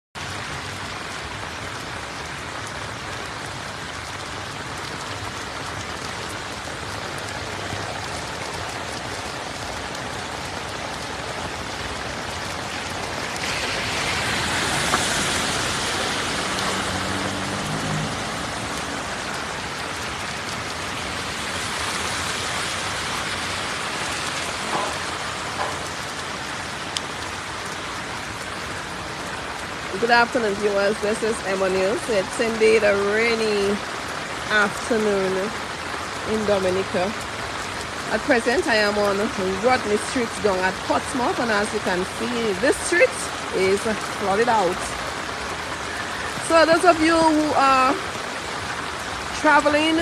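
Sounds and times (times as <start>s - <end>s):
heavy rain falling: 0.2s - 50.0s
small knocks: 24.6s - 26.0s.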